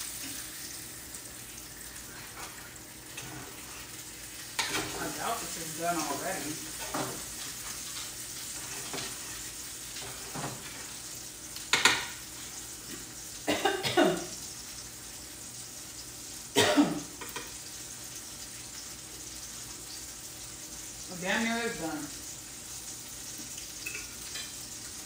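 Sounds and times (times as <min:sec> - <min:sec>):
food sizzling in a pan: 0:00.0 - 0:25.0
utensil scraping a pan: 0:02.3 - 0:04.0, 0:06.7 - 0:10.9.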